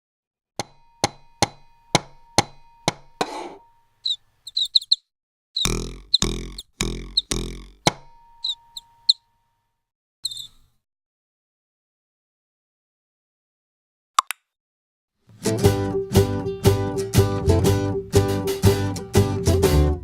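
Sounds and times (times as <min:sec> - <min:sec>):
high bird chirps: 0:04.0 - 0:09.3, 0:10.2 - 0:10.7.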